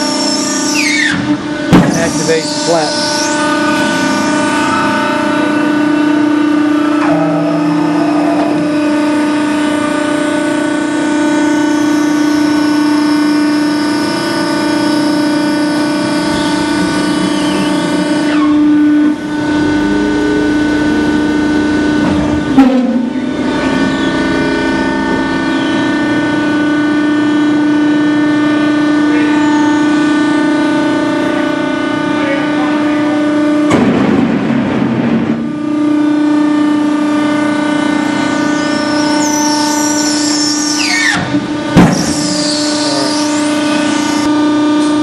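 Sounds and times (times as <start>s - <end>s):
baler motor humming: 0.0s - 45.0s.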